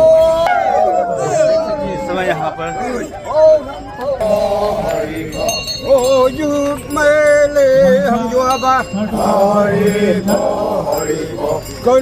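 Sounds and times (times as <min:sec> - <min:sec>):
voices chanting in held notes: 0:00.0 - 0:12.0.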